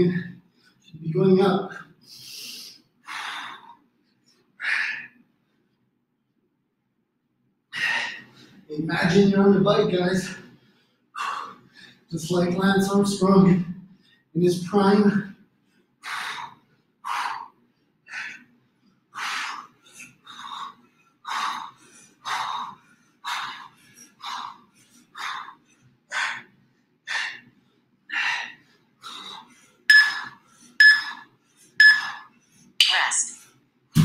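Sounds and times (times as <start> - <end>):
person breathing hard: 1.9 - 5.3, 7.7 - 8.7, 10.2 - 12.1, 15.6 - 32.8.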